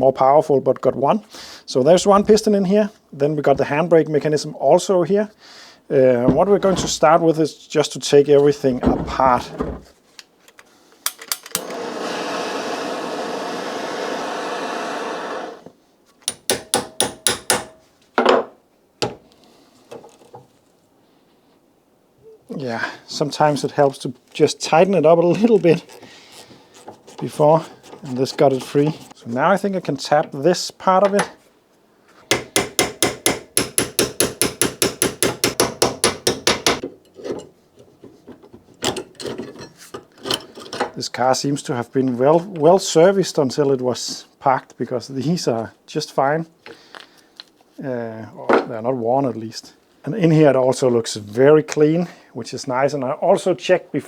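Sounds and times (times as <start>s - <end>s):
metal clattering: 6.3s - 7.2s, 8.7s - 9.9s
hammer tapping on metal: 16.3s - 17.8s, 32.3s - 36.8s
sharp metallic knocks: 16.3s - 17.8s, 32.3s - 36.8s.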